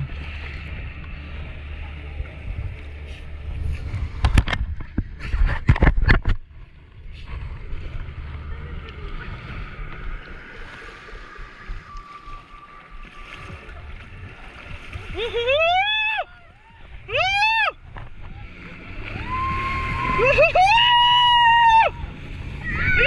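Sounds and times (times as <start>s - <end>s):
wind on microphone: 0.0s - 15.6s
motorboat engine running: 0.0s - 23.0s
water noise: 0.0s - 23.0s.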